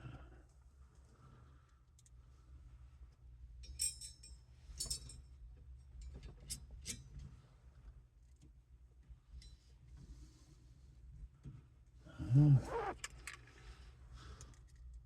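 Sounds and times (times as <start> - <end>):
faint metallic clinks: 3.6 - 5.3.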